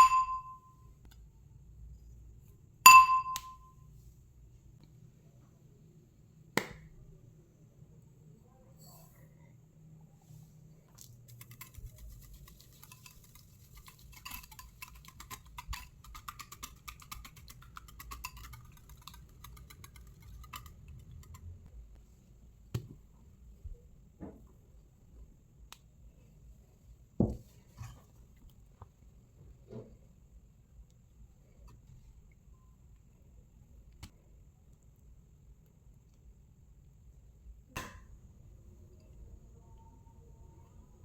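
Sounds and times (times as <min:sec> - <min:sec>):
spoon clinking against bowl: 0:00.0 - 0:00.8, 0:02.9 - 0:03.6, 0:17.8 - 0:19.1.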